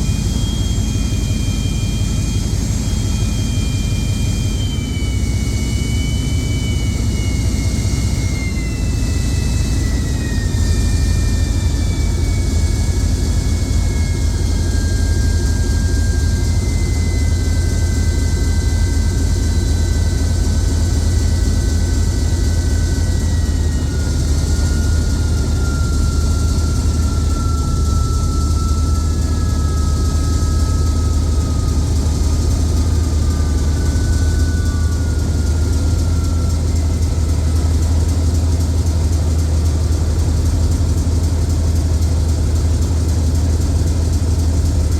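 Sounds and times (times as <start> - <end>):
diesel engine heavy rumble: 0.0 - 44.9
turbochargers whistling: 0.0 - 44.9.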